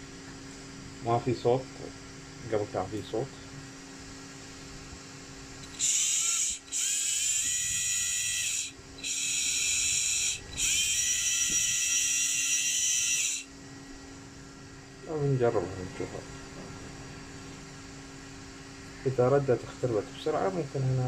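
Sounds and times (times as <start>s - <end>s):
small electric motor whine: 5.6s - 14.7s.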